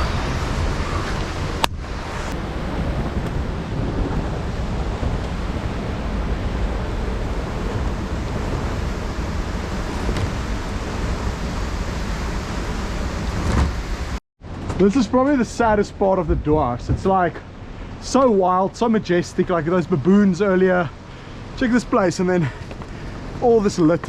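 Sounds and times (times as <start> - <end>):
river water rushing: 0.0 - 14.2.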